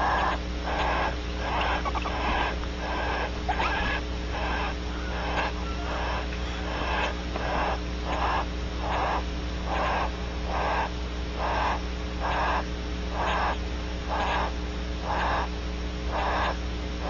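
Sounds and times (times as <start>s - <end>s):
bird rasping breathing: 0.0s - 12.6s
low electrical hum: 0.0s - 17.0s.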